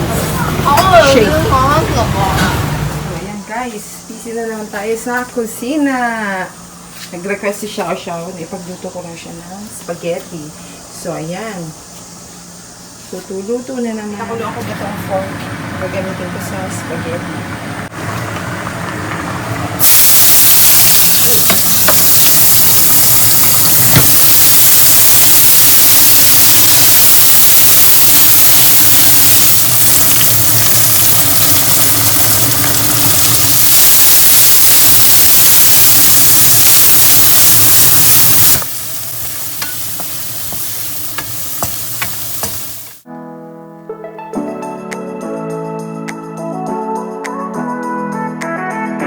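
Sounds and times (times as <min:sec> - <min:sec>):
food sizzling in a pan: 0:19.8 - 0:43.1.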